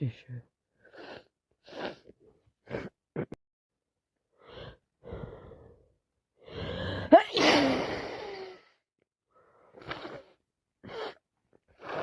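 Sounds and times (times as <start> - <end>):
woman gasping and sniffing: 6.4 - 8.7.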